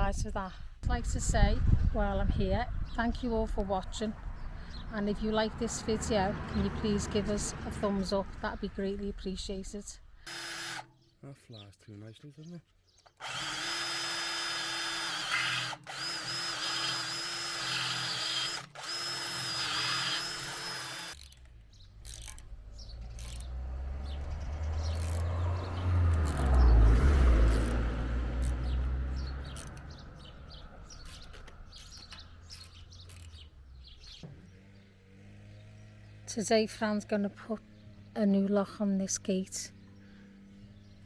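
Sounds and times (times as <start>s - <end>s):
low rumble: 0.0s - 10.2s
power tool motor running: 10.2s - 10.9s, 13.2s - 33.4s.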